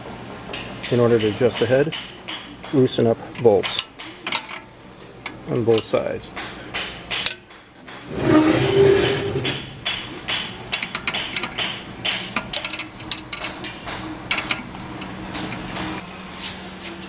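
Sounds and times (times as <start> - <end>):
metallic scrape: 8.1 - 9.8.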